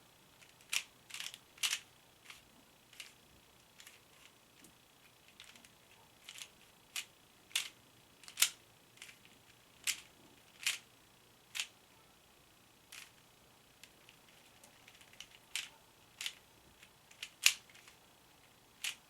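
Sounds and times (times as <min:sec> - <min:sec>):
puzzle cube turning clicks: 0:00.4 - 0:02.4, 0:03.0 - 0:03.2, 0:05.3 - 0:10.8, 0:12.9 - 0:13.2, 0:13.8 - 0:18.0, 0:18.8 - 0:19.0.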